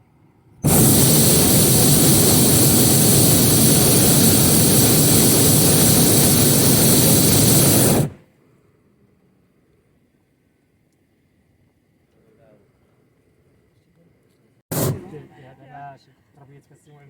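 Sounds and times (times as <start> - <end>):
propane burner blast: 0.6 - 8.2, 14.7 - 15.2.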